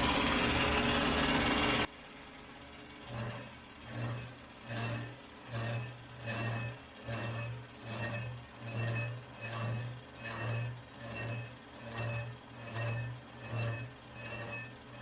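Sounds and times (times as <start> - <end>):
lathe humming and whirring: 0.0 - 15.0.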